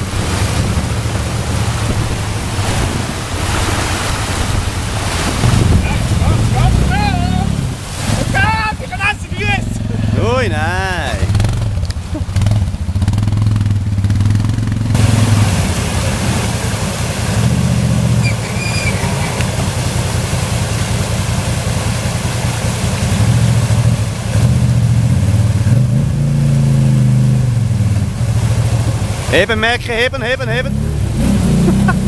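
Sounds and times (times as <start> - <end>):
steady rushing noise: 0.0 - 24.4
off-road vehicle engine revving: 0.0 - 32.0.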